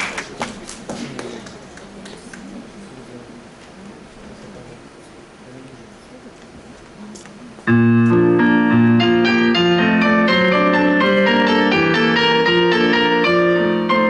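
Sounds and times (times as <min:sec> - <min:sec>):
piano playing chords: 0:07.7 - 0:14.0.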